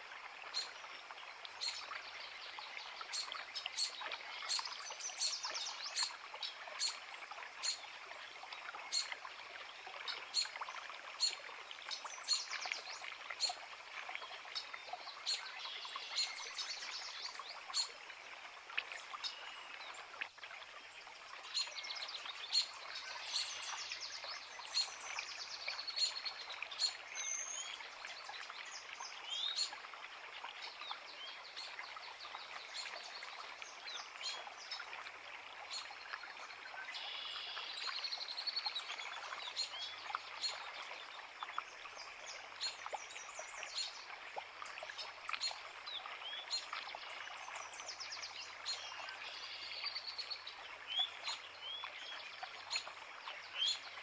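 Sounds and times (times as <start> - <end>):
creek water rushing: 0.0 - 54.0.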